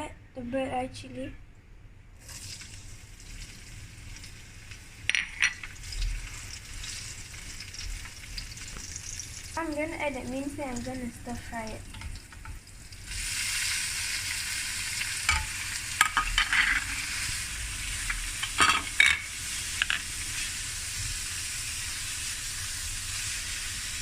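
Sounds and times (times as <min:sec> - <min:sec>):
meat sizzling in a frying pan: 0:02.2 - 0:24.0
utensil scraping a pan: 0:16.1 - 0:17.2.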